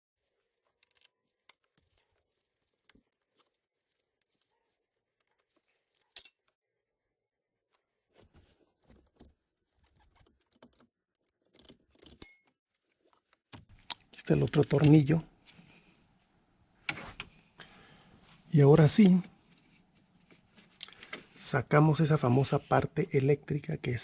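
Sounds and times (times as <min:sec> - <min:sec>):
rustling handling noise: 0:12.7 - 0:24.0.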